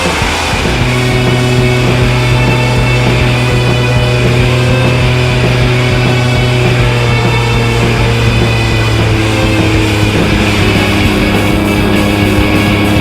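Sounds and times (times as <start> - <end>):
low drone: 0.0 - 13.0
rock music: 0.0 - 13.0.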